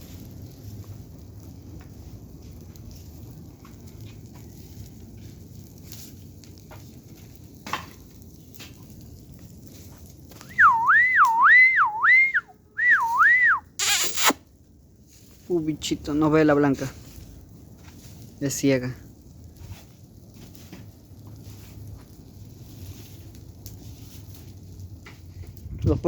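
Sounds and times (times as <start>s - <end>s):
campfire crackling and popping: 0.0s - 15.2s, 16.6s - 25.7s
warbling whistle: 10.5s - 14.4s.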